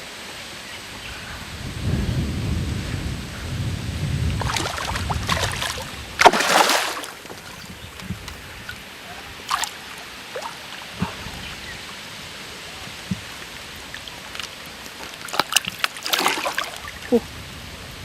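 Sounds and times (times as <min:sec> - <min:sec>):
water splashing and sloshing: 0:04.3 - 0:17.2.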